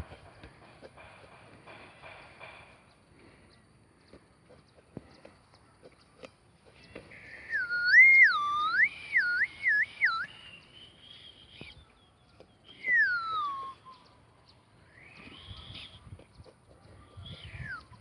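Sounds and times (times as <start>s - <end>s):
person whistling: 7.2s - 10.4s, 12.8s - 14.0s.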